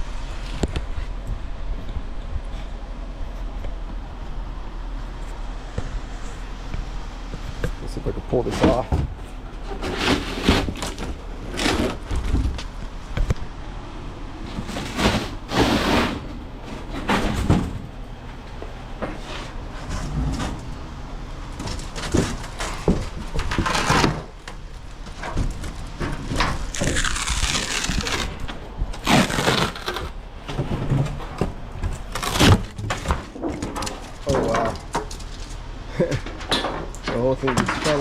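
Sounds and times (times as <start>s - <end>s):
cracks knocks and scrapes: 5.2s - 13.5s, 14.5s - 20.7s, 21.5s - 38.0s
crackling scraping tear: 7.3s - 13.3s, 21.4s - 38.0s
metal sheet prying off foam: 22.0s - 24.3s, 26.5s - 30.1s, 32.1s - 33.9s.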